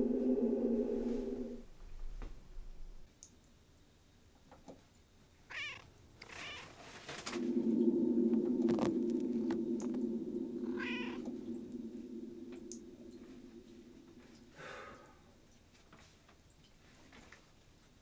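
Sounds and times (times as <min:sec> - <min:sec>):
steady low hum: 0:00.0 - 0:03.1, 0:07.2 - 0:15.7
cat meowing: 0:05.5 - 0:06.7, 0:10.7 - 0:11.2.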